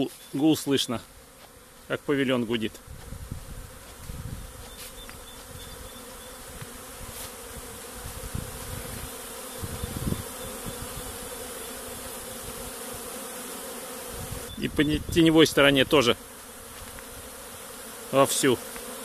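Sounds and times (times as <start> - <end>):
honeybees humming: 0.0 - 19.0.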